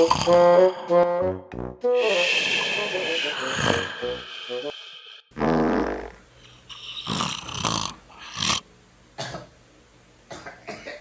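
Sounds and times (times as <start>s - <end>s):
person snoring loudly: 0.0s - 1.0s, 2.0s - 8.6s.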